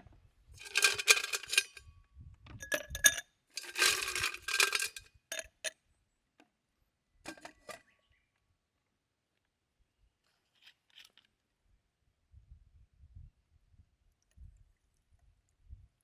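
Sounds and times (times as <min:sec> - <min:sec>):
metal cookware clinking: 0:00.6 - 0:01.8, 0:02.6 - 0:05.7.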